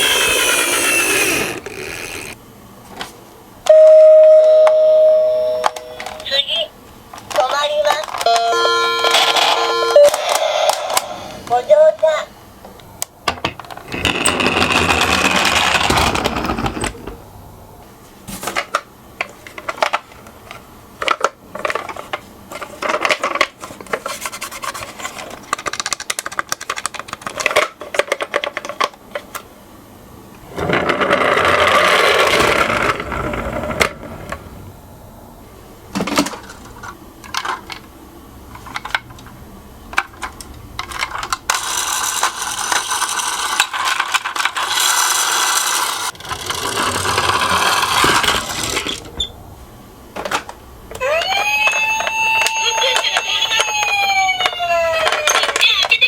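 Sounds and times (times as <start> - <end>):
toy cars rattling down slope: 0.0 - 2.4, 13.8 - 17.0, 30.5 - 33.9, 40.8 - 49.1, 51.0 - 56.0.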